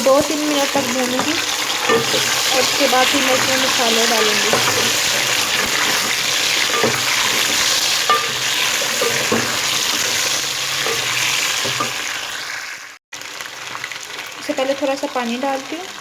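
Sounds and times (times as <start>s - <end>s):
spoon scraping and knocking pan: 0.0s - 12.4s
chicken and onions sizzling in oil: 0.0s - 16.0s.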